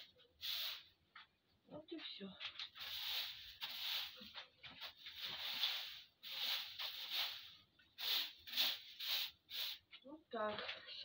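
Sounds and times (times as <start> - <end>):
broom sweeping straw: 0.0 - 0.9, 2.6 - 9.8.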